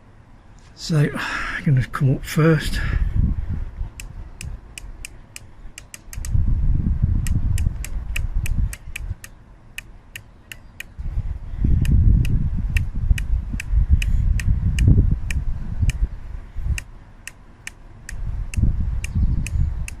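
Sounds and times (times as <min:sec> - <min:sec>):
scope turret clicks: 0:04.0 - 0:06.4, 0:07.2 - 0:11.0.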